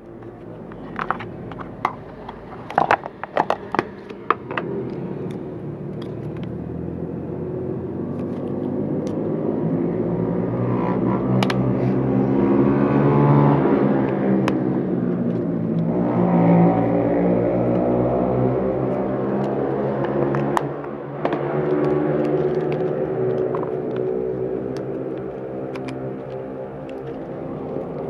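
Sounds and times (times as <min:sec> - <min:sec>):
vehicle engine rumbling: 0:00.0 - 0:28.0.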